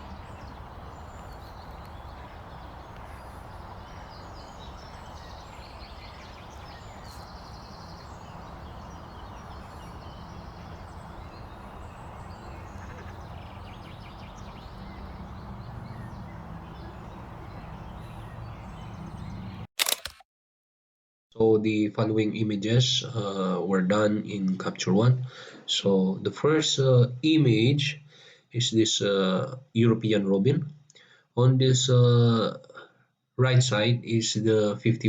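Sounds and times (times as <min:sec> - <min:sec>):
steady low rumble: 0:00.0 - 0:19.6
small birds chirping: 0:00.0 - 0:19.7.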